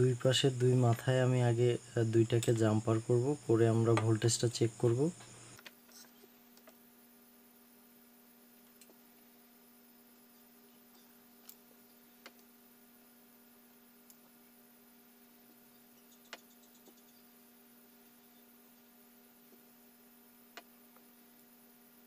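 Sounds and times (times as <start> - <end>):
faint electrical hum: 0.0 - 22.0
faint small clicks: 10.9 - 11.6, 12.2 - 12.5, 16.2 - 17.0.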